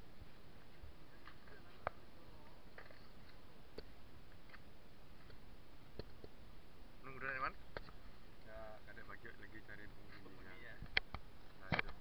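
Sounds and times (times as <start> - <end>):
background hiss: 0.0 - 12.0.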